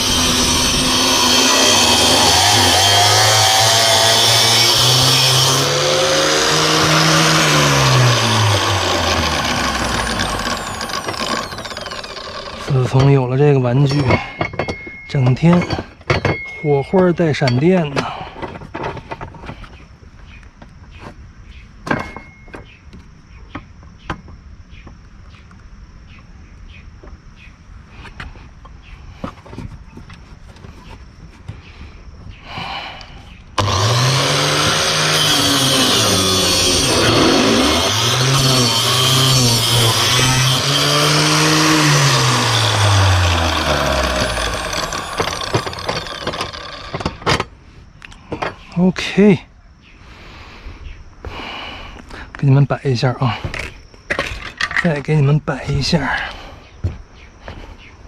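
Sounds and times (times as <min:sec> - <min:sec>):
angle grinder cutting metal: 0:00.0 - 0:14.2, 0:33.6 - 0:47.2
metal tools knocking and clinking: 0:12.8 - 0:19.3, 0:21.8 - 0:22.7, 0:54.1 - 0:54.9.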